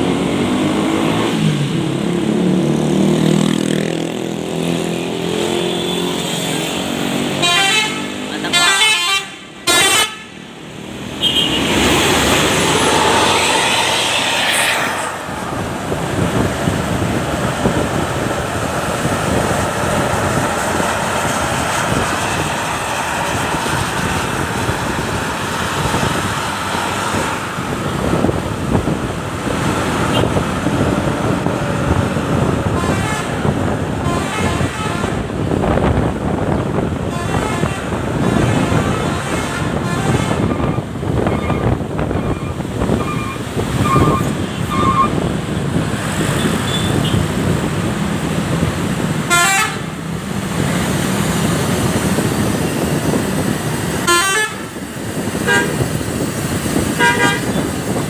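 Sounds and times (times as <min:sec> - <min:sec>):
road and traffic noise: 0:00.0 - 0:58.0
vehicle horn: 0:07.4 - 0:10.4, 0:11.2 - 0:11.8, 0:32.7 - 0:35.3, 0:37.0 - 0:40.7, 0:49.3 - 0:49.9, 0:54.0 - 0:54.7, 0:55.4 - 0:55.8, 0:57.0 - 0:57.7.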